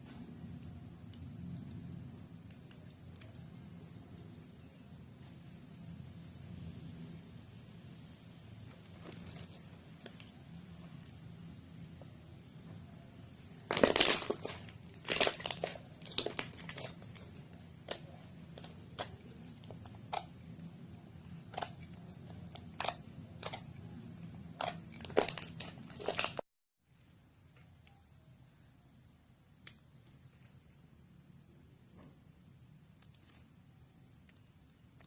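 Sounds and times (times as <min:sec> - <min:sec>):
slime crackling and popping: 0:13.5 - 0:20.6, 0:21.5 - 0:23.8, 0:24.5 - 0:26.4.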